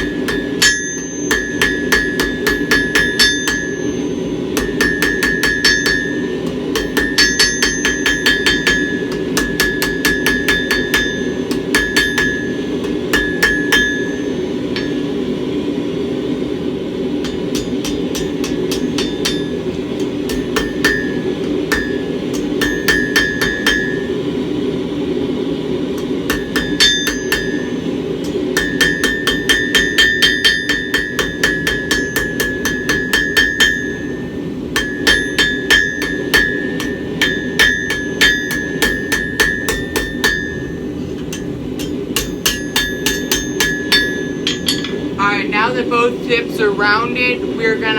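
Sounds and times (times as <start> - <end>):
anvil ringing: 0.0 - 15.8, 17.2 - 24.4, 26.0 - 46.0
hammer striking steel on anvil: 0.0 - 15.9, 17.2 - 24.6, 25.9 - 45.7
low hum: 0.0 - 47.9.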